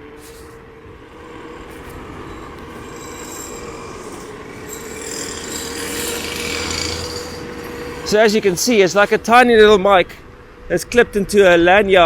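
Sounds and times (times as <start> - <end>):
electric motor whine: 0.0 - 9.7.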